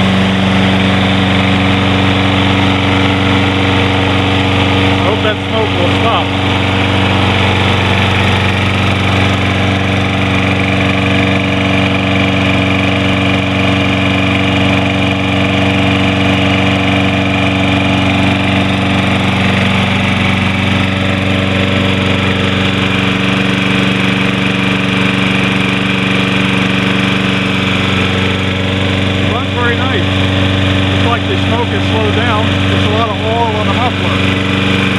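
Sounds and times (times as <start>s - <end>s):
lawn mower engine running: 0.0s - 34.9s.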